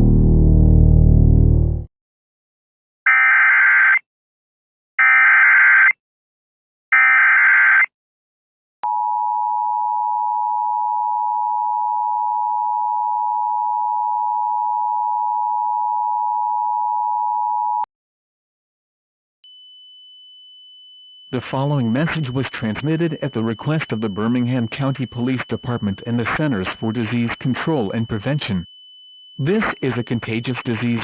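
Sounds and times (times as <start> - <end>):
data tone bursts: 21.4 - 28.7, 29.4 - 31.0.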